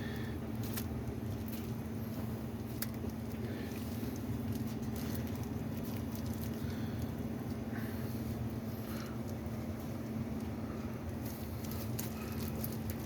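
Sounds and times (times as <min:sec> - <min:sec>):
spinning cable patter: 0:00.0 - 0:07.7, 0:08.5 - 0:13.0
drain snake motor hum: 0:00.0 - 0:13.0.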